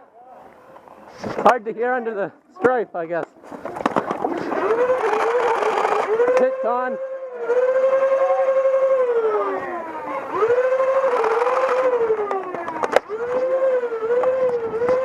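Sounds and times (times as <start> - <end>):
siren wailing: 4.4 - 15.0.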